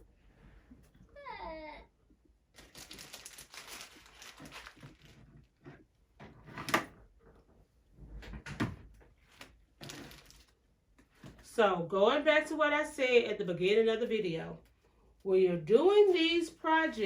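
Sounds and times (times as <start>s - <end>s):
rustling and handling noises: 2.5s - 8.1s, 8.8s - 11.5s.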